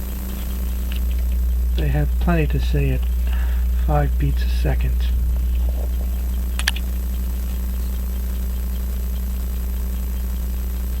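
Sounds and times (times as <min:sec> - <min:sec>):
low electrical hum: 0:00.0 - 0:11.0
sharp click: 0:06.5 - 0:06.9.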